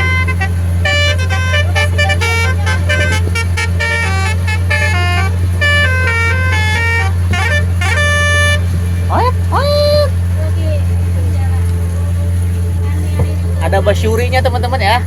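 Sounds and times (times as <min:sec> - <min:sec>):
horn playing quick melody: 0:00.0 - 0:10.0
boat engine drone: 0:00.0 - 0:15.0.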